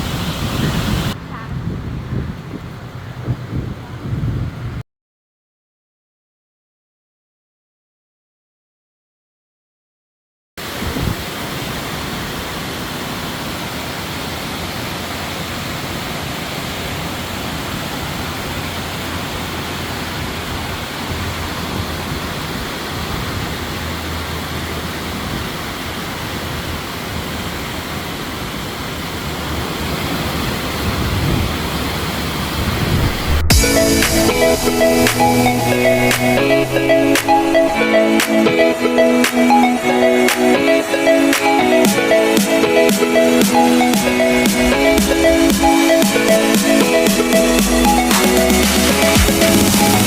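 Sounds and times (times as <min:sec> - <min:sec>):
waterfall rushing: 0:10.6 - 0:50.0.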